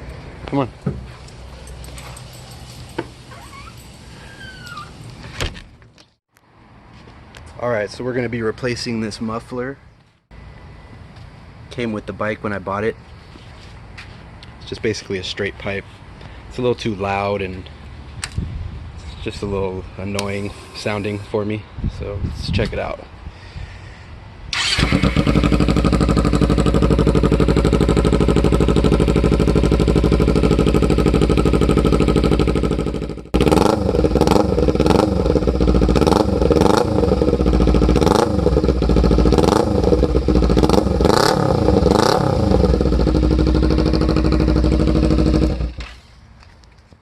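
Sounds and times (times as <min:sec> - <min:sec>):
motorcycle engine idling and revving: 0:24.6 - 0:46.3.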